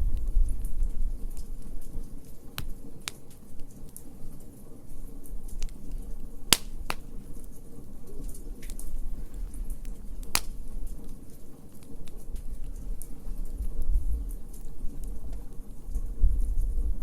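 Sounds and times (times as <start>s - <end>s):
low rumble of flames: 0.0s - 17.0s
wood fire crackling and popping: 0.0s - 17.0s.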